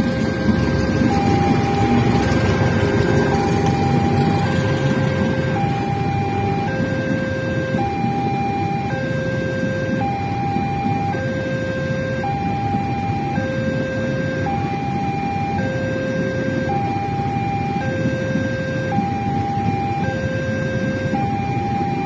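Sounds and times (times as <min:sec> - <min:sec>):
low rumble: 0:00.0 - 0:11.1
two-tone crossing alarm: 0:00.0 - 0:22.0.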